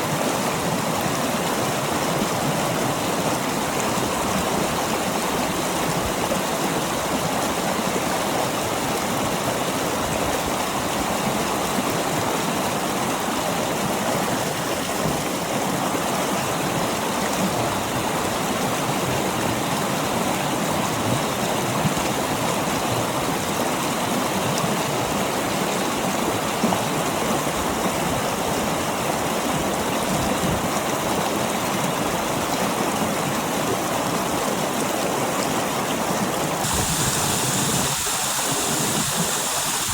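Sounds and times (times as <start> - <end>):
water pouring over rocks: 33.8 - 39.9.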